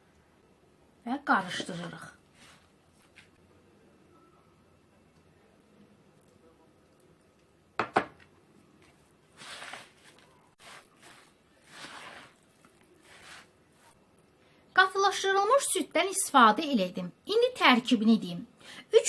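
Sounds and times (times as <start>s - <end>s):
knocks on a bowl: 7.8s - 8.2s
sticky mixture scraping swishes: 9.0s - 14.0s.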